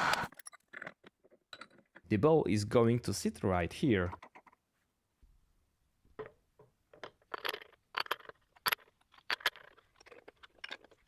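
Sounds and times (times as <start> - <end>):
metal parts clinking: 0.3 - 2.0, 6.9 - 11.0.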